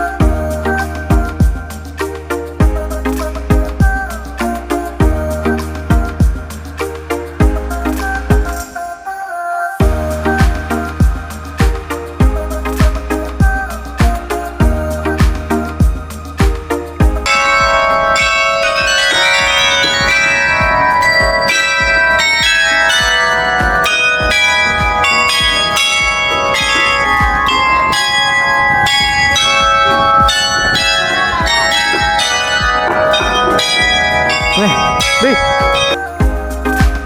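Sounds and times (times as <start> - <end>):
large tower bells ringing: 17.2 - 36.0.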